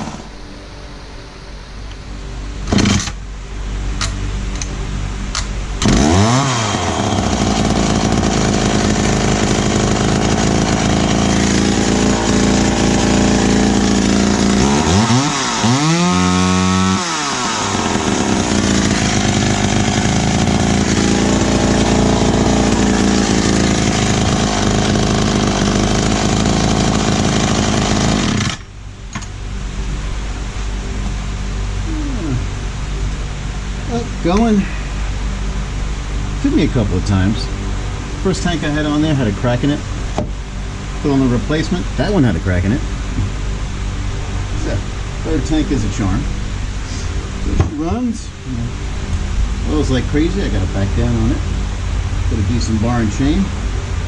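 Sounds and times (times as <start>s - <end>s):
chainsaw engine revving: 2.6s - 3.2s, 5.8s - 28.7s.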